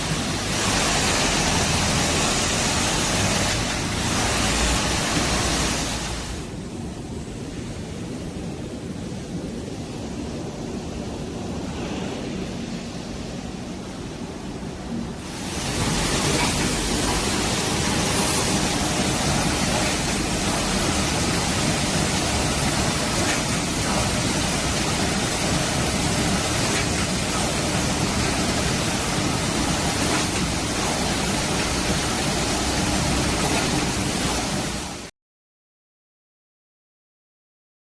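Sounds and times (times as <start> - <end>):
industrial machinery roaring: 0.0 - 6.6, 15.1 - 35.1.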